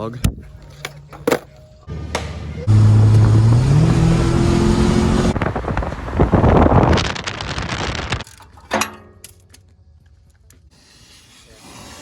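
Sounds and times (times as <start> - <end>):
car engine accelerating hard: 1.9 - 7.2
loud rushing noise: 2.7 - 8.2.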